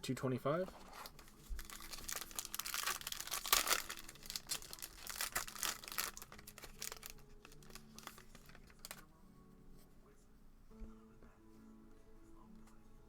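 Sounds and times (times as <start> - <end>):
foil wrapper crinkling and tearing: 0.9 - 9.0.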